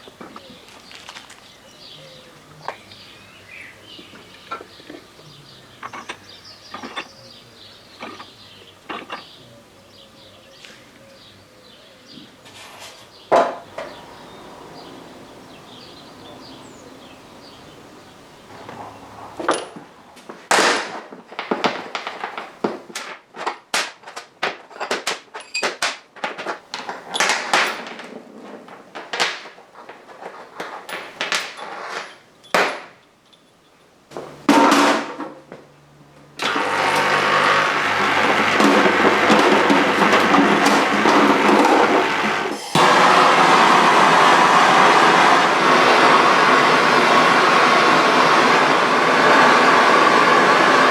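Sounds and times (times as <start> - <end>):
steady loud noise: 36.4 - 50.9.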